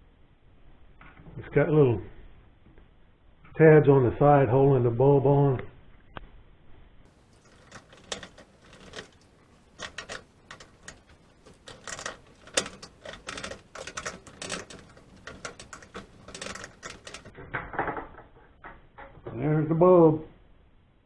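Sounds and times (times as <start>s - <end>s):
plastic parts clicking and rattling: 7.3s - 19.4s.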